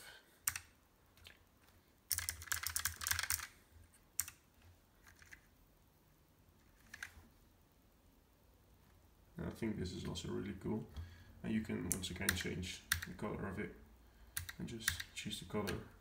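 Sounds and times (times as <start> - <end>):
mechanical keyboard keys clicking: 2.1 - 3.5.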